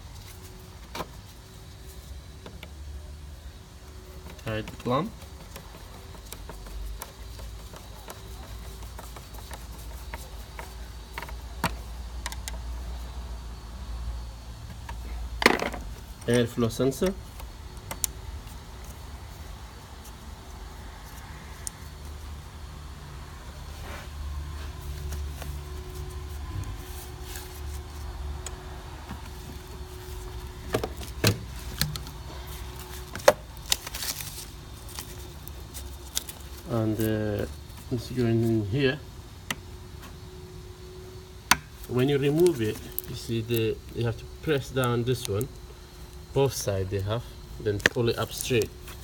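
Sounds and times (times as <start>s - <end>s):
steady low hum: 0.0s - 49.0s
hand tools clicking and tapping: 4.2s - 12.7s.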